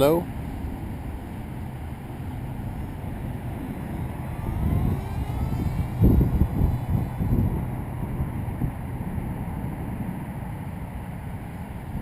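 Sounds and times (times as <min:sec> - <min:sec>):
model plane motor whining: 0:00.7 - 0:10.2
wind buffeting microphone: 0:00.7 - 0:10.4.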